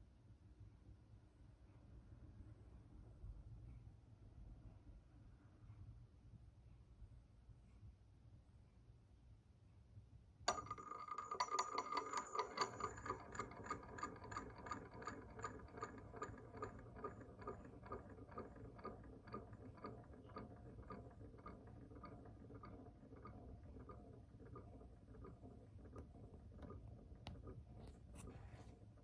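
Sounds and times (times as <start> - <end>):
rhythmic metallic ticking: 10.5 - 28.2.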